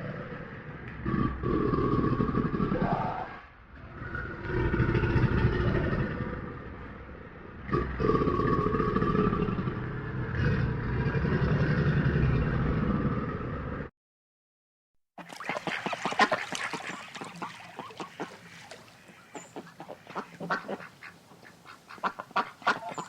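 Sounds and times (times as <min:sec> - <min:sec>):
ducks quacking: 0:15.2 - 0:23.0.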